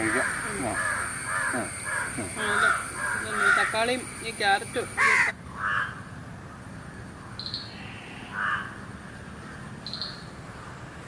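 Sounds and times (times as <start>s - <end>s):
crows cawing: 0.0s - 4.2s, 4.8s - 6.0s, 7.7s - 8.8s.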